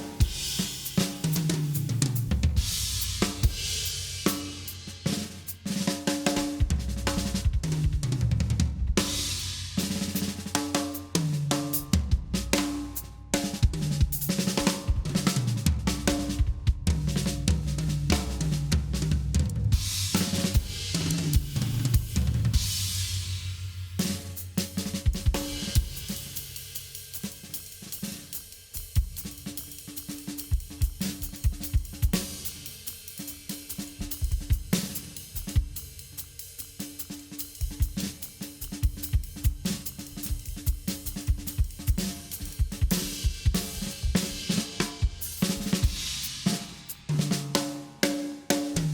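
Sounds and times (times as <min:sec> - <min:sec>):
drum kit playing: 0:00.0 - 0:48.9.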